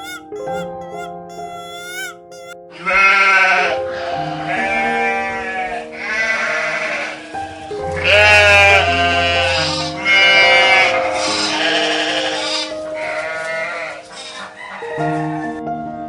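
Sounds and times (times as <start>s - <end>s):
farm animal bleating: 0.0s - 3.7s, 8.0s - 14.3s.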